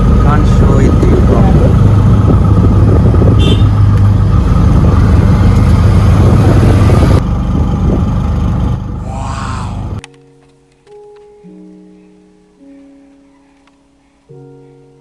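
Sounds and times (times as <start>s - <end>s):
vehicle engine and road noise: 0.0s - 10.0s.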